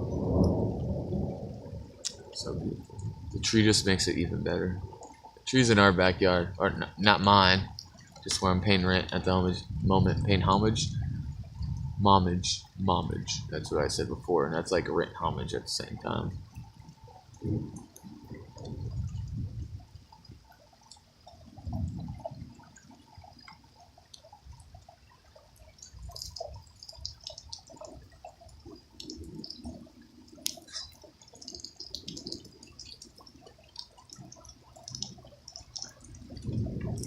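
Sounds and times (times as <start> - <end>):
thunder rumbles: 0.0 - 5.0, 9.1 - 14.8, 15.4 - 20.5, 21.5 - 23.4, 33.7 - 37.0
rain dripping off awning: 0.0 - 37.0.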